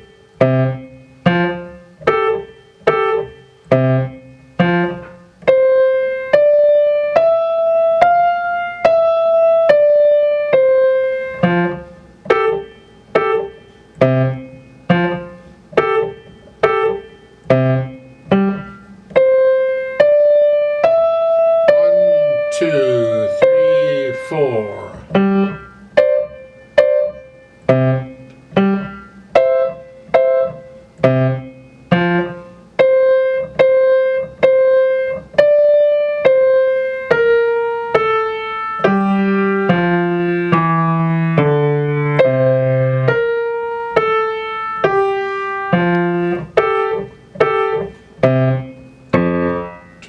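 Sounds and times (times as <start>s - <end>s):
piano playing simple melody: 0.0s - 50.0s.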